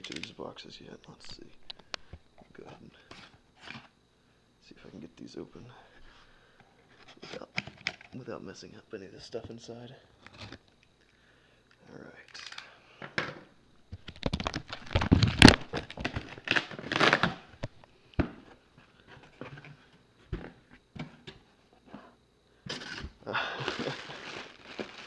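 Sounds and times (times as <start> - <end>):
packing material crinkling: 14.0 - 17.5, 23.5 - 25.0
cardboard ripping and scraping: 14.7 - 17.3, 23.6 - 25.0.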